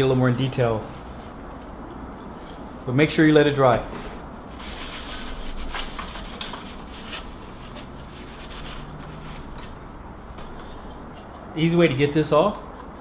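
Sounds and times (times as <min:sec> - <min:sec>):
computer parts rubbing and scraping: 0:03.9 - 0:11.8.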